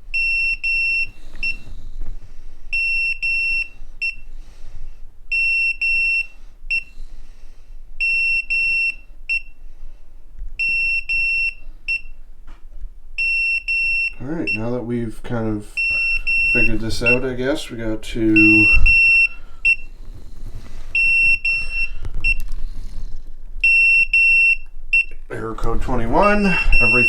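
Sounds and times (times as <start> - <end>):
electric scooter warning beeps: 0.1 - 1.6, 2.7 - 4.3, 5.3 - 6.9, 8.0 - 9.6, 10.6 - 12.2, 13.2 - 14.7, 15.8 - 17.3, 18.4 - 19.9, 21.0 - 22.4, 23.6 - 25.3, 26.1 - 27.0.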